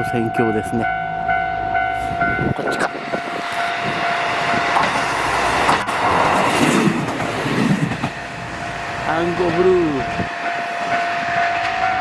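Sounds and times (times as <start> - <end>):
level-crossing bell ringing: 0.0 - 4.8, 9.0 - 12.0
diesel railcar passing: 0.0 - 12.0.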